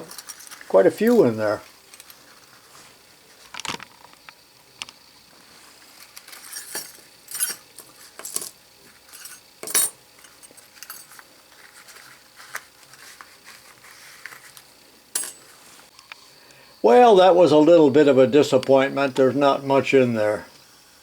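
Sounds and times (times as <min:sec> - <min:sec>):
metal lock picks clinking: 0:00.0 - 0:01.3, 0:06.3 - 0:08.5.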